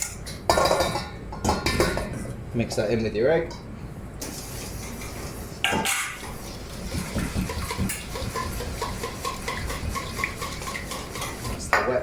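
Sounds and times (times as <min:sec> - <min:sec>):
liquid sloshing in a bowl: 0:04.5 - 0:11.7.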